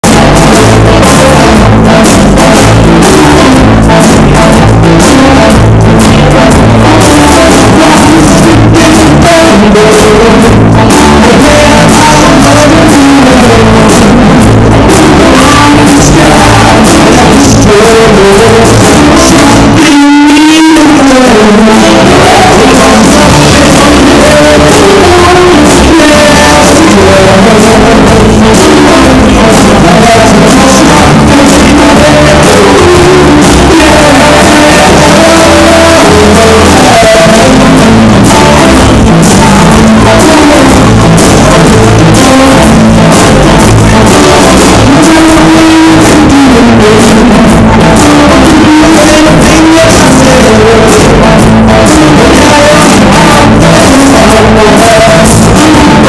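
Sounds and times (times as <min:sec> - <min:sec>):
rock band playing loudly: 0:00.0 - 0:56.0.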